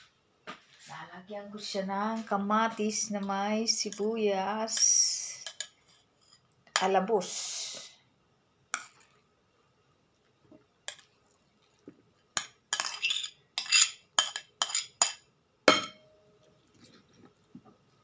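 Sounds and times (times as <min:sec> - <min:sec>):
cutlery clinking on dishes: 0:12.4 - 0:16.1.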